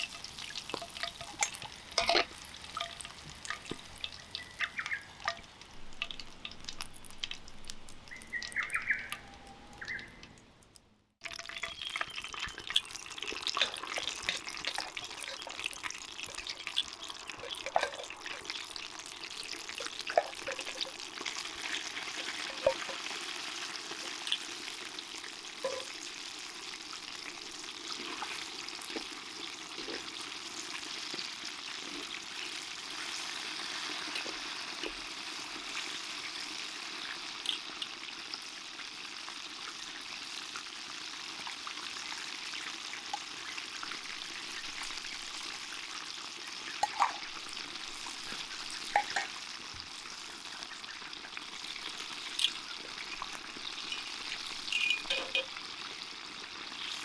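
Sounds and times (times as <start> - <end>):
oil popping: 0.0 - 9.2, 11.2 - 24.6, 46.7 - 55.8
chicken deep-frying in hot oil: 0.0 - 10.3, 11.2 - 57.0.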